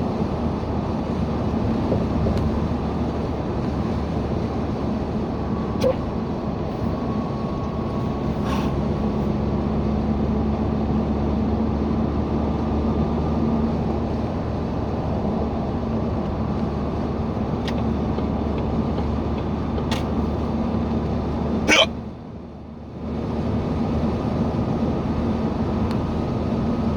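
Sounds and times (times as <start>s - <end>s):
road and engine drone in car: 0.0s - 26.9s
person hiccuping: 5.8s - 6.0s, 21.7s - 21.9s.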